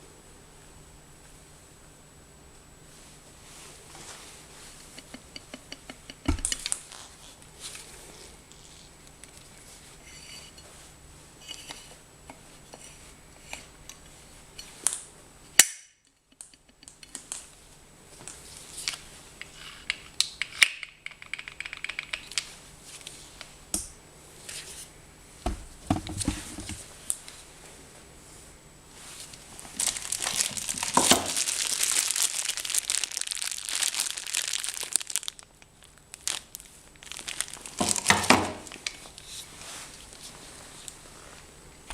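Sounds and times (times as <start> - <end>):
plastic and paper crinkling: 29.2 - 41.3.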